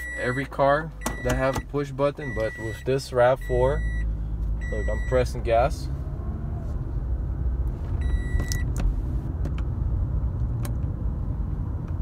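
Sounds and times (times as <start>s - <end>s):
car engine and road rumble: 0.0s - 12.0s.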